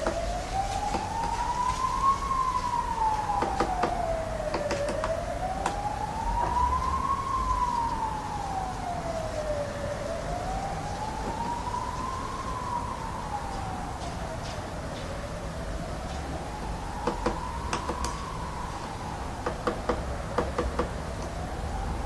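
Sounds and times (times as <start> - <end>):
emergency vehicle siren wailing: 0.0 - 22.0.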